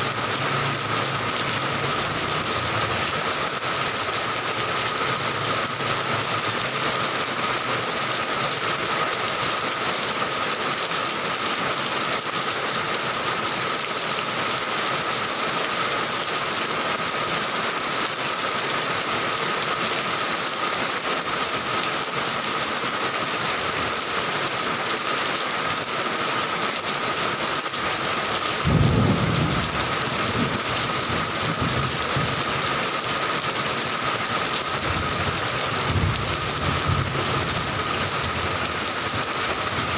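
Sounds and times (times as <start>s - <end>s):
heavy rain falling: 0.0s - 39.9s
low rumble of thunder: 28.6s - 32.4s, 35.9s - 37.7s.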